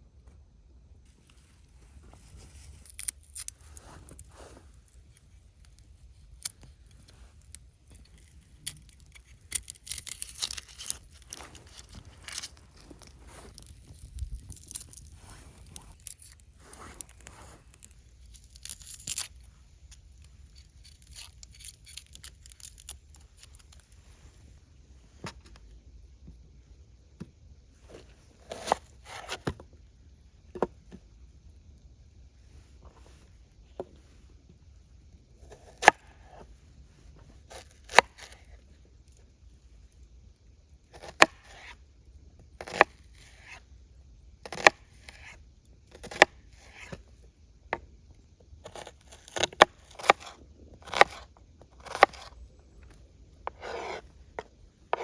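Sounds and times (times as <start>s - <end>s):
rustling scrapes of twigs: 1.1s - 24.6s
branches snapping: 7.4s - 19.3s.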